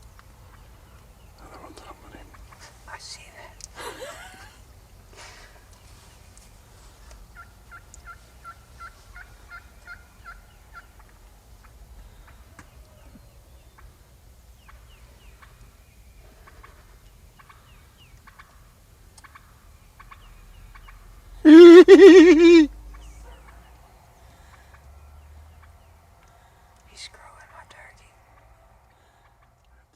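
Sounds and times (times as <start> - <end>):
faint high chirps: 21.5 - 22.7
turkey gobbling: 21.5 - 22.7.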